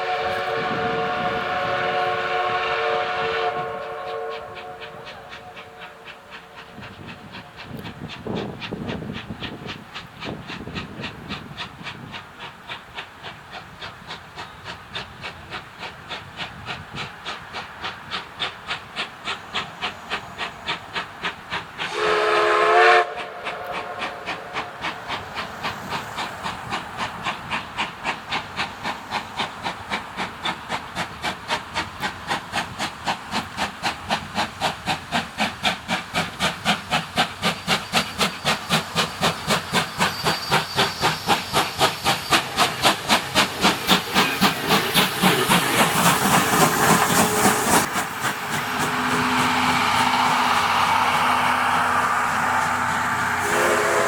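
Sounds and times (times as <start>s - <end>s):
locomotive whistle blast: 0.0s - 6.2s, 21.9s - 24.6s, 48.9s - 54.0s
steam hissing: 0.0s - 54.0s
steam locomotive exhaust chuffs: 0.0s - 54.0s.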